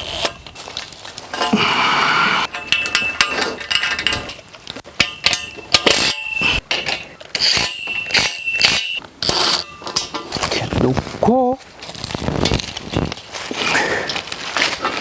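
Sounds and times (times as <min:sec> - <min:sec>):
metal pipes and clamps clanking: 0:01.3 - 0:10.6.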